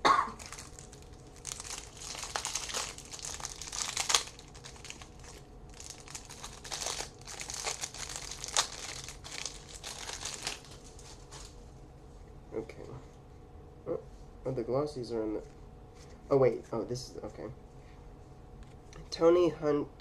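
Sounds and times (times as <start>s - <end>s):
plastic wrapper crinkling: 0.4s - 11.6s.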